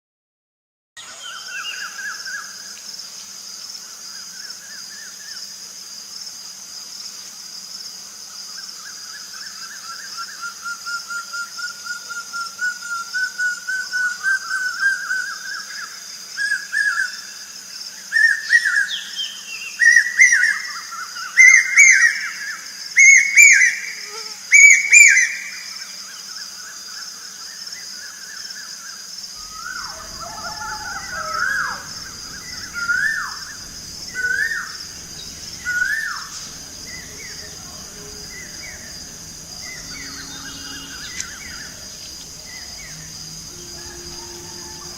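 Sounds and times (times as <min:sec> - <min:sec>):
high insect drone: 0:01.0 - 0:44.9
birds singing whistled notes: 0:18.2 - 0:26.2, 0:29.4 - 0:44.9.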